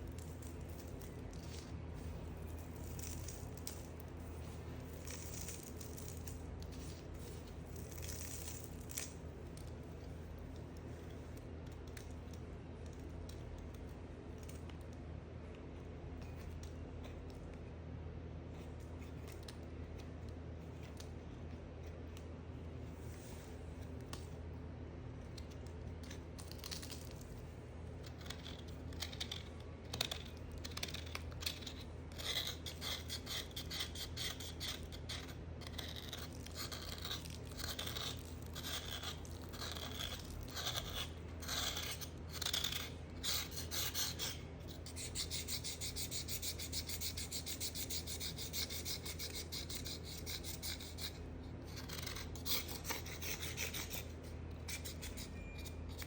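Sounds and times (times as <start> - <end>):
blade scraping soap: 28.0 - 56.0.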